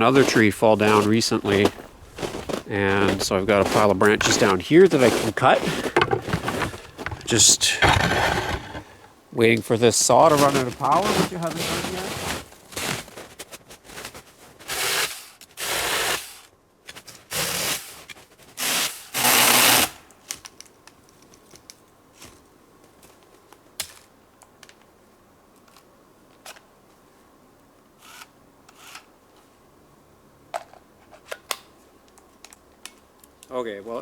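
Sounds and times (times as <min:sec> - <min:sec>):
chainsaw cutting branches: 0:05.1 - 0:09.1, 0:18.6 - 0:20.0.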